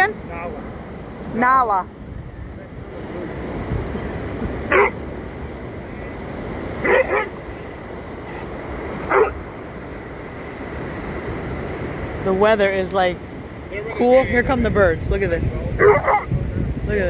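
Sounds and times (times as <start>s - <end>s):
dog barking: 4.7s - 5.0s, 6.8s - 7.4s, 9.0s - 9.4s, 15.8s - 16.3s.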